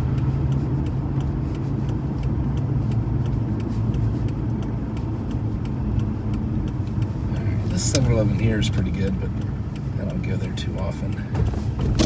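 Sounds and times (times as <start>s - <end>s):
engine and road rumble: 0.0s - 12.0s
faint light ticks: 0.1s - 11.7s.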